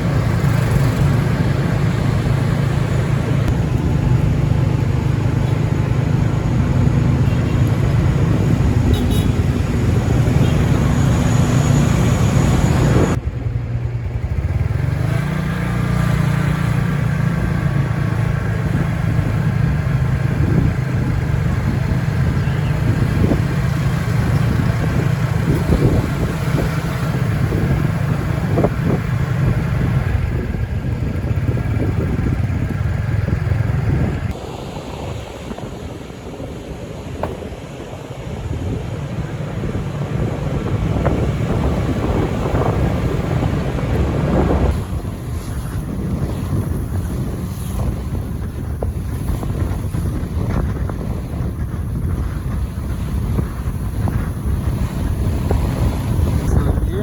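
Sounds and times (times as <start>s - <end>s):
road and wind noise: 0.0s - 57.0s
vehicle engine humming: 0.0s - 57.0s.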